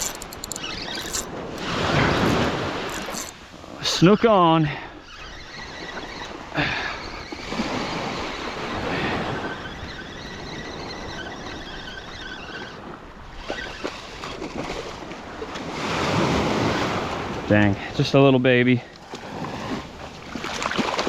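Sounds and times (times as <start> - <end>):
fishing reel cranking: 0.0 - 3.4.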